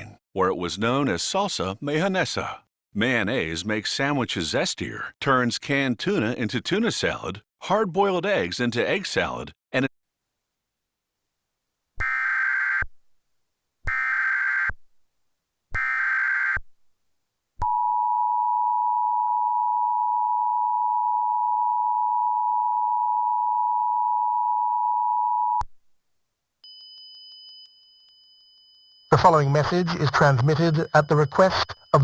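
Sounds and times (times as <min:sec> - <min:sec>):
digital data bursts: 0:29.1 - 0:32.0
two-tone attention signal: 0:29.1 - 0:32.0.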